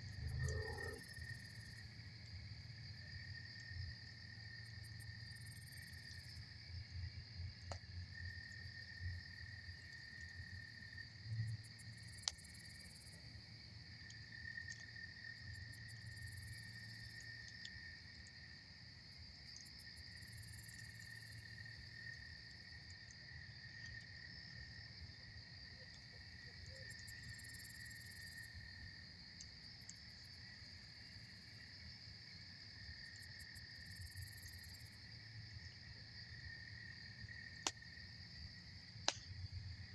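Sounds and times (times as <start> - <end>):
night insects chorus: 0.0 - 39.9
campfire crackling: 11.1 - 16.2, 38.9 - 39.9
sharp pop from fire: 39.0 - 39.4.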